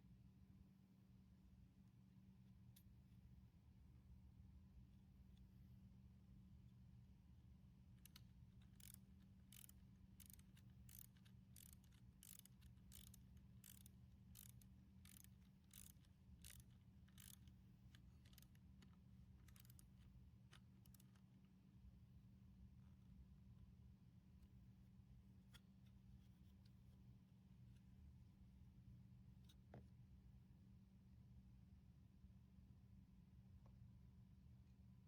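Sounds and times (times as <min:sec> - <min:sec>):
low steady hum: 0:00.0 - 0:35.0
ratchet wrench clicking: 0:08.0 - 0:21.2.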